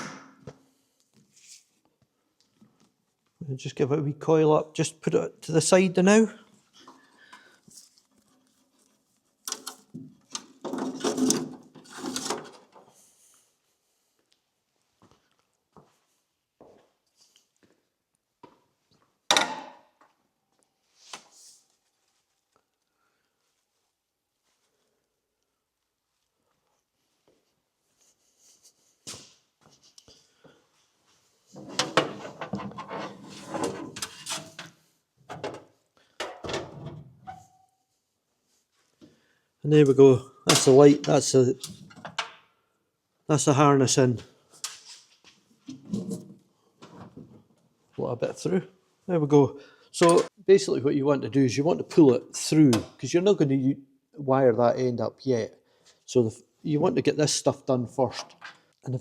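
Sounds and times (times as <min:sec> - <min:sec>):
wiring knocking and scraping: 0:08.1 - 0:12.9, 0:31.6 - 0:35.6.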